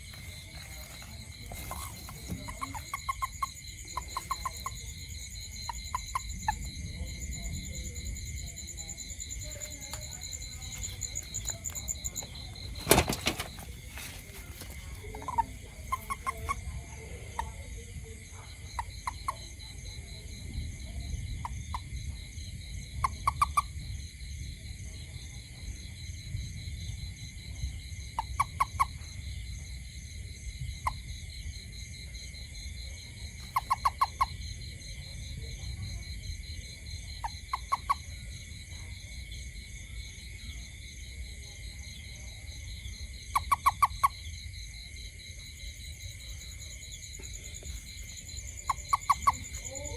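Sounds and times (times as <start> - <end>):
toad croaking: 0.0 - 22.1, 22.8 - 23.9, 28.0 - 29.4, 30.7 - 31.2, 32.8 - 39.5, 42.2 - 44.8, 45.5 - 49.9
insects trilling: 0.0 - 49.9.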